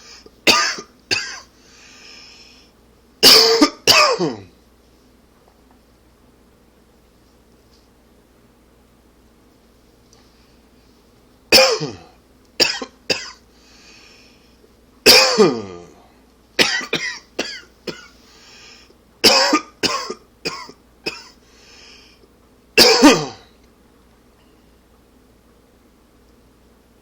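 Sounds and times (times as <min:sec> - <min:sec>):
man coughing: 0:00.5 - 0:01.5, 0:03.2 - 0:04.5, 0:11.5 - 0:13.4, 0:15.1 - 0:16.0, 0:16.6 - 0:18.2, 0:19.2 - 0:21.4, 0:22.8 - 0:23.5
man breathing in: 0:01.5 - 0:02.8, 0:13.5 - 0:14.6, 0:18.2 - 0:19.0, 0:21.4 - 0:22.3.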